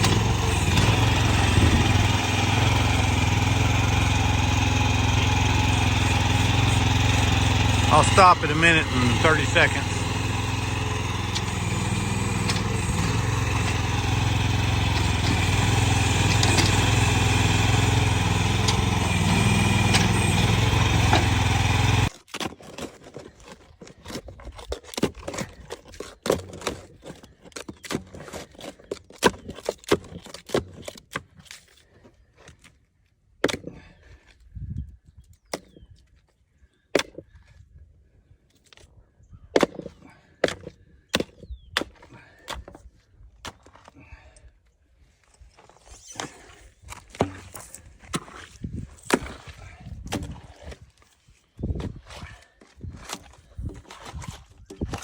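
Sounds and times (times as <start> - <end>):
excavator engine running: 0.0 - 22.1
sharp clicks and knocks: 9.5 - 14.0, 14.8 - 17.1.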